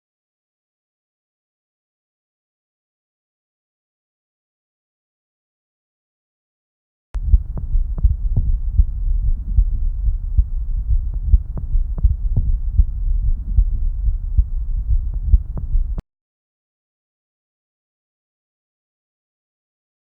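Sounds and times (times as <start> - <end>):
heartbeat thuds: 7.2 - 16.0
low rumble: 7.2 - 16.0.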